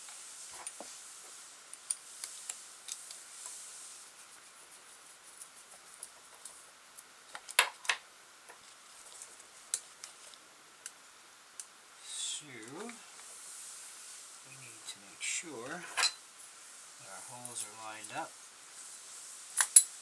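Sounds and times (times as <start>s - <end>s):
small parts clicking and tapping: 1.7s - 3.6s, 19.6s - 19.9s.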